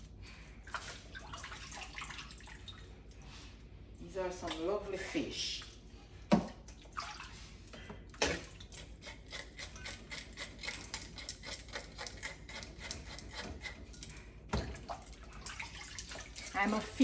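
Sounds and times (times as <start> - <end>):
knife scraping fish scales: 8.7 - 14.2.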